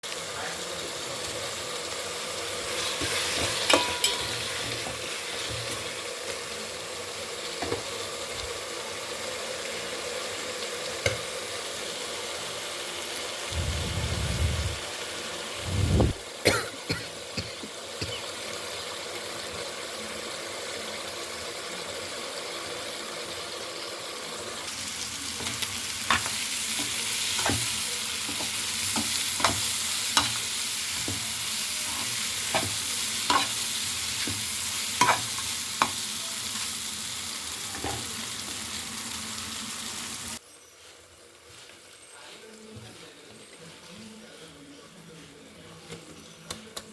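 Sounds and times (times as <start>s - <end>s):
food sizzling in oil: 0.1s - 16.4s, 17.1s - 42.1s
utensil clinking in pan: 3.4s - 4.8s
low thud: 13.5s - 14.8s.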